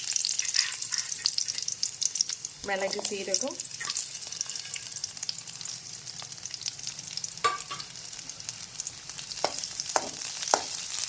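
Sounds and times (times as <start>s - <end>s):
onions sizzling in hot oil: 0.0s - 11.0s
metal spatula knocking on pan: 7.5s - 7.8s, 9.4s - 10.8s.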